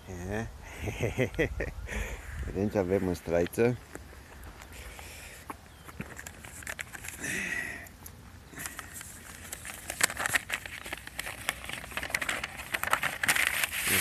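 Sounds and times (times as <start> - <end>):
rustling in a bag: 4.0 - 7.4, 8.5 - 14.0
small clicks and crackles: 5.8 - 7.2, 7.8 - 14.0.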